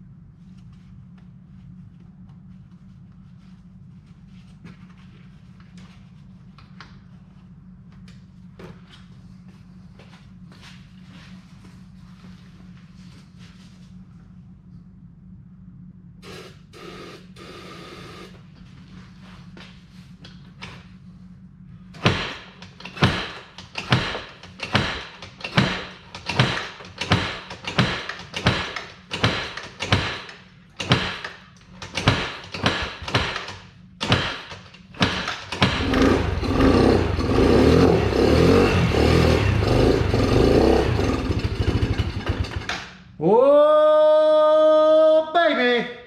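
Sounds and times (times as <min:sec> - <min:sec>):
engine running roughly: 0:21.7 - 0:43.0
engine cranking slowly: 0:22.4 - 0:42.9.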